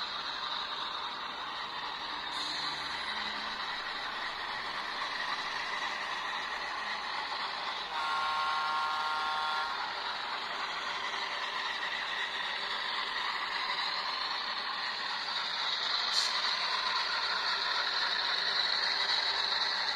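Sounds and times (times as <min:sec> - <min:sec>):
diesel locomotive engine whining: 0:00.0 - 0:19.9
chord-like locomotive horn: 0:07.9 - 0:10.0.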